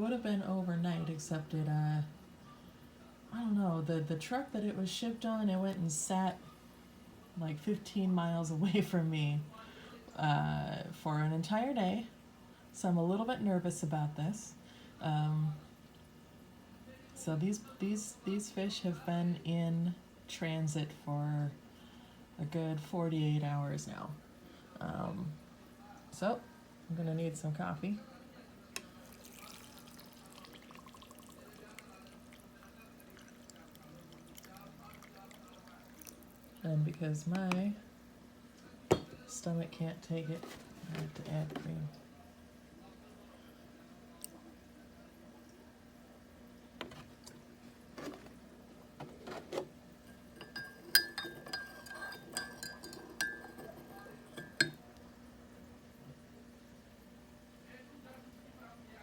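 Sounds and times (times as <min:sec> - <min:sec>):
coffee pouring into mug: 0:28.7 - 0:36.7, 0:46.8 - 0:55.0
spoon clinking against mug: 0:50.0 - 0:54.9.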